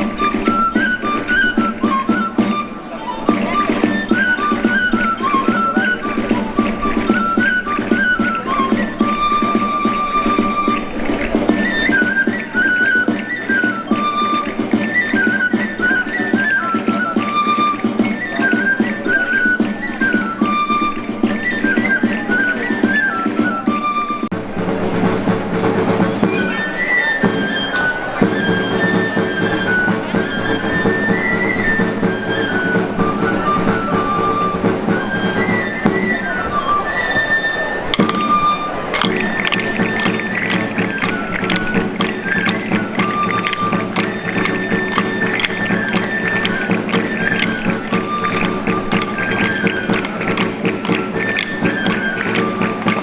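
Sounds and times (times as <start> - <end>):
folk music with pipe melody: 0.0 - 53.0.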